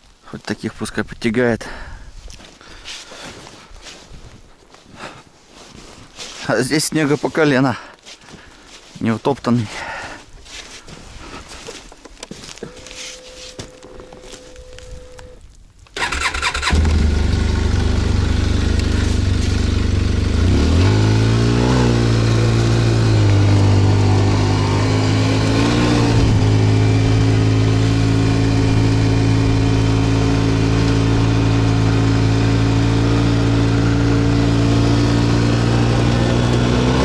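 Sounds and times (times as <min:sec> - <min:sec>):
small engine starting and running: 0:16.0 - 0:37.0.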